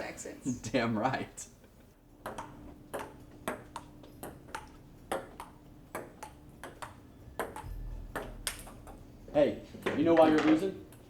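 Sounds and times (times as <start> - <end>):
ping-pong ball clicking off paddles: 2.2 - 9.0, 9.8 - 11.0.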